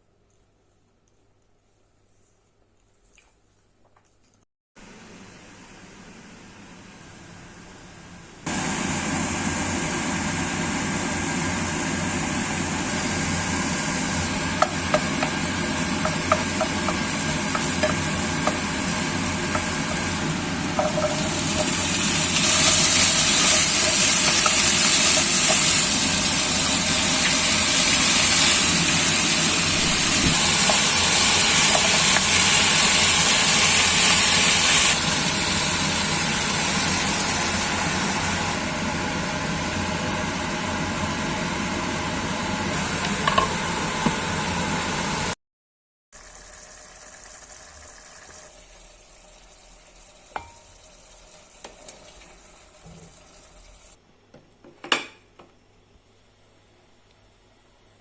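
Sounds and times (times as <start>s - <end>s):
food sizzling in a frying pan: 12.9s - 38.6s, 46.2s - 54.0s.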